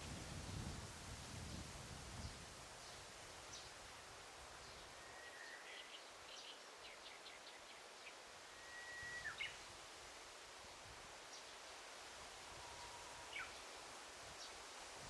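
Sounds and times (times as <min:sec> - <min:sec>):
soft forest hiss: 0:00.0 - 0:15.0
songbirds singing: 0:04.6 - 0:09.7, 0:12.6 - 0:13.8
long whistled bird note: 0:08.6 - 0:09.4.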